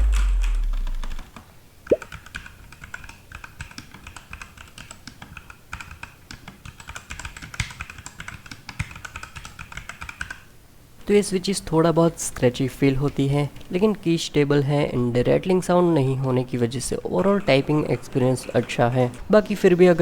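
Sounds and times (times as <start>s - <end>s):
mechanical keyboard typing: 0.1s - 10.4s.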